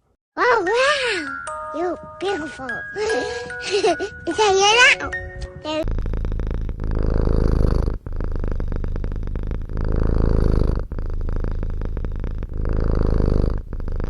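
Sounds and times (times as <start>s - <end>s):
cat purring: 5.6s - 14.0s.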